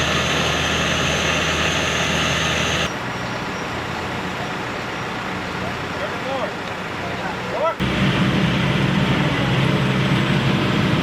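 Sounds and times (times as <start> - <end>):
heavy machinery engine running: 0.0 - 11.0.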